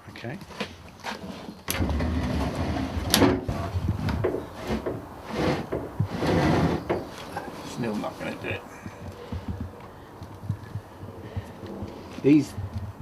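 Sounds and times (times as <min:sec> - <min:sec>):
heavy metal unit scraping: 0:01.0 - 0:08.6.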